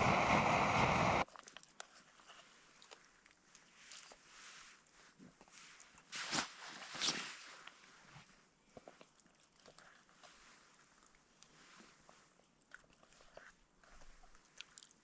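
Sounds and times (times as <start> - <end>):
person chewing: 8.7 - 15.0.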